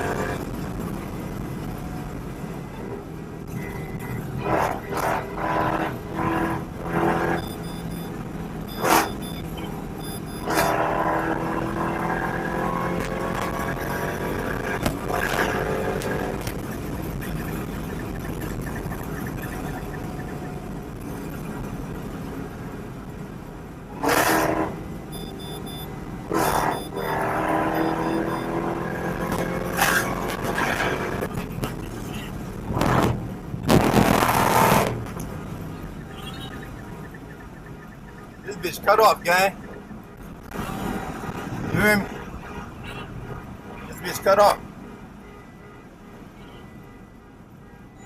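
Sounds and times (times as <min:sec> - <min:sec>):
car engine accelerating hard: 0:10.0 - 0:18.6, 0:24.0 - 0:24.8, 0:25.4 - 0:32.0, 0:32.6 - 0:35.3.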